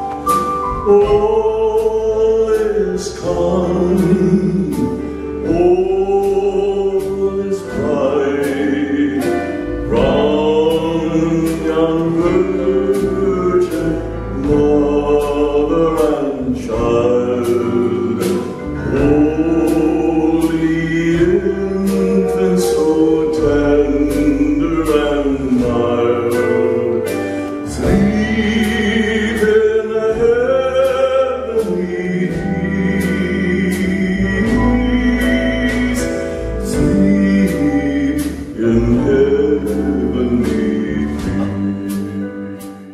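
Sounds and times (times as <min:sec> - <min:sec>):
live music with singing: 0:00.0 - 0:42.9.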